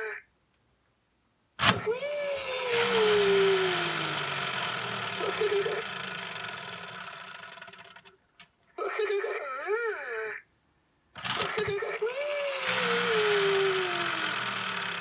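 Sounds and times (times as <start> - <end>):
toy speaker sound sliding down: 1.6 - 8.1, 11.2 - 15.0
toy motor and gears whirring: 1.6 - 8.2, 11.2 - 15.0.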